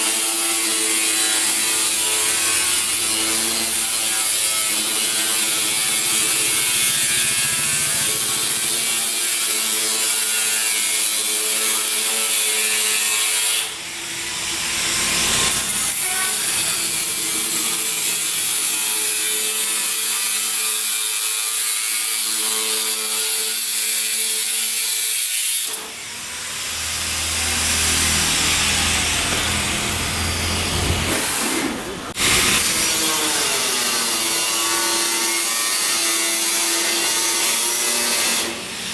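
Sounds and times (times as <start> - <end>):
power tool grinding steel: 0.0 - 38.9
steady hum: 26.1 - 32.6.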